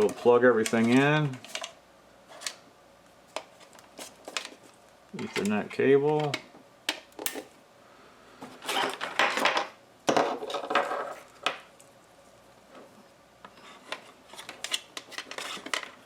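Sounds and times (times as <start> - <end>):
cable handling rustling: 0.0 - 2.6, 3.3 - 6.5, 12.8 - 16.0.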